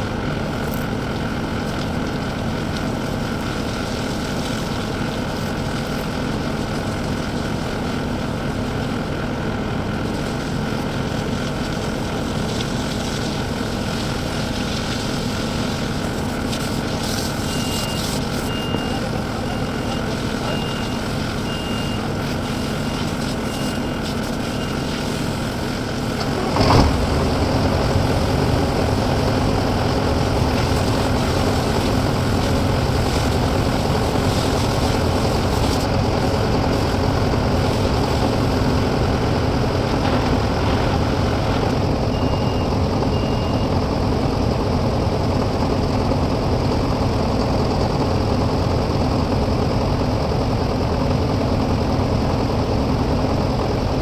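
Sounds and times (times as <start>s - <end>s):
diesel engine running: 0.0s - 54.0s
reversing alarm beeping: 17.2s - 25.9s, 42.1s - 43.8s.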